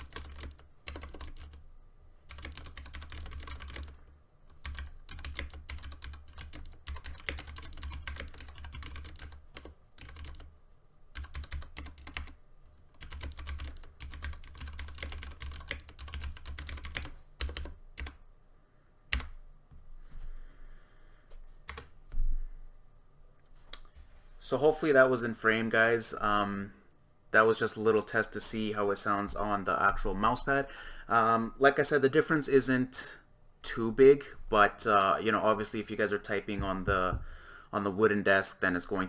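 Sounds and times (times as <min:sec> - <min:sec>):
mechanical keyboard typing: 0:00.0 - 0:01.6, 0:02.3 - 0:10.5, 0:11.1 - 0:18.2.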